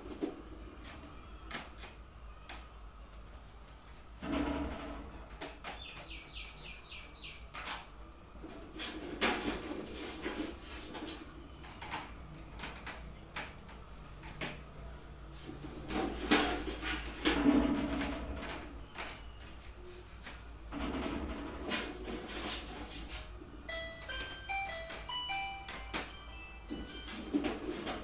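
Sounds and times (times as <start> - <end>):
bird chirping high notes: 23.7 - 27.3.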